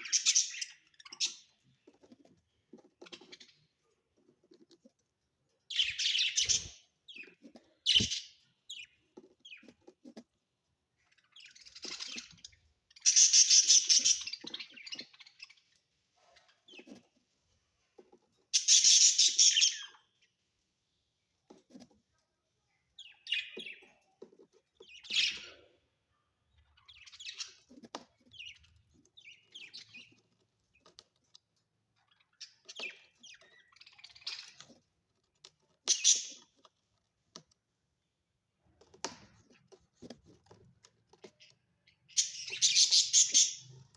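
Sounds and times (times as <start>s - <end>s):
budgerigars chirping: 13.0s - 15.4s, 18.6s - 20.0s, 42.1s - 43.7s.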